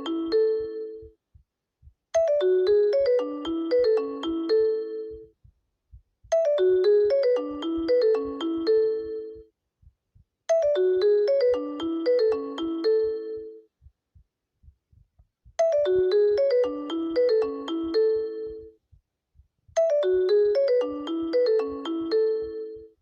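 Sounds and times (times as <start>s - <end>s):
bell-like ringtone melody: 0.0s - 1.1s, 2.2s - 5.3s, 6.3s - 9.5s, 10.5s - 13.6s, 15.6s - 18.8s, 19.8s - 23.0s.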